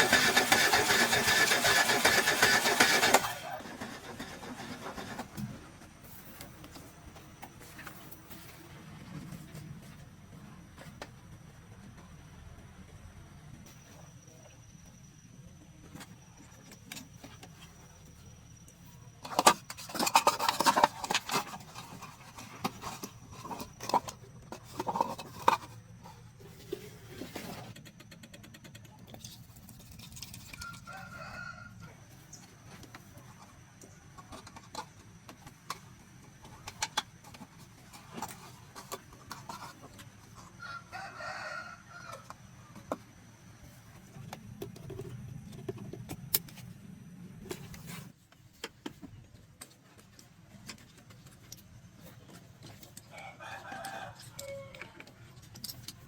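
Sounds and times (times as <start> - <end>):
rooster crowing: 30.6 - 32.0, 40.6 - 42.4, 53.1 - 55.1.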